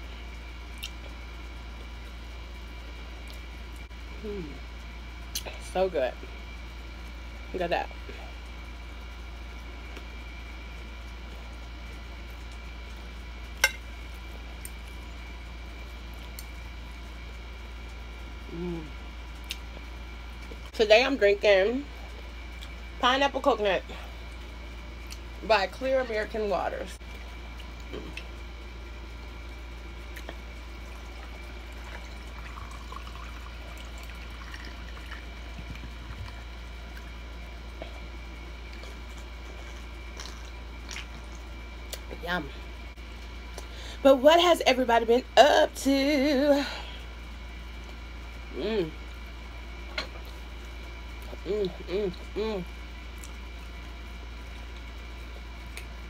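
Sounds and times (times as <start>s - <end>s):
steady background hum: 0.0s - 56.0s
drinking from a bottle: 30.2s - 37.1s.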